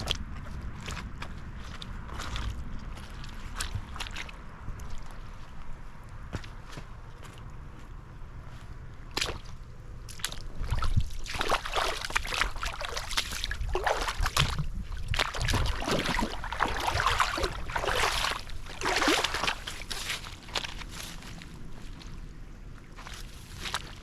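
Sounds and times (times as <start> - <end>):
water splashing from wading: 10.1 - 20.9.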